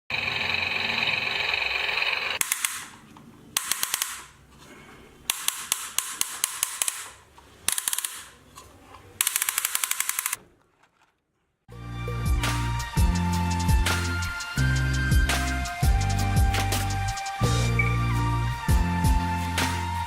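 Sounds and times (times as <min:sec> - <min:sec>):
electronic engine sound effect: 0:00.1 - 0:02.4
electronic machine-gun sound effect: 0:00.1 - 0:02.9, 0:03.6 - 0:04.2, 0:09.2 - 0:10.4.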